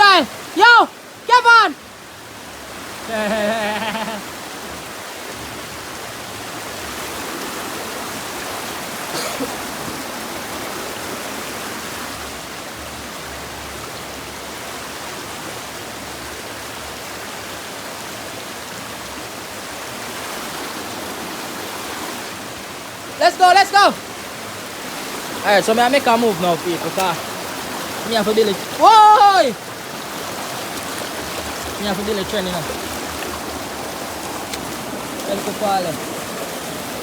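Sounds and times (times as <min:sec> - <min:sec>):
person calling loudly: 0:00.0 - 0:01.8, 0:03.0 - 0:04.3, 0:23.2 - 0:24.0, 0:28.0 - 0:29.7
river water over rocks: 0:00.0 - 0:37.0.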